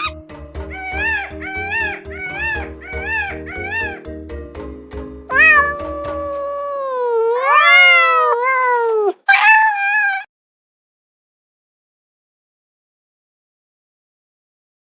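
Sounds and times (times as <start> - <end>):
background music: 0.0 - 6.9
cat meowing: 0.7 - 4.0, 5.3 - 10.3.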